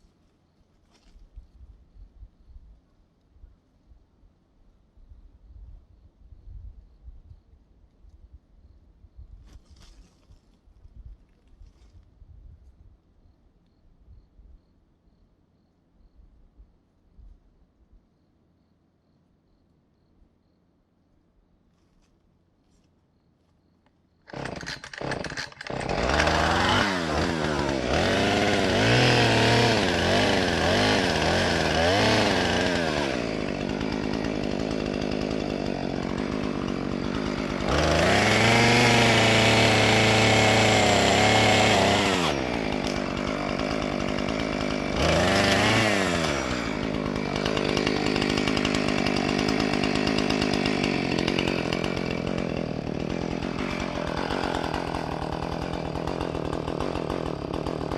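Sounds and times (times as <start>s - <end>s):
chainsaw revving: 24.3s - 57.9s.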